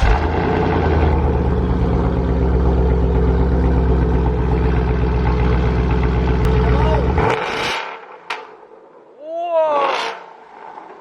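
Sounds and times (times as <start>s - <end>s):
car engine idling: 0.0s - 7.2s.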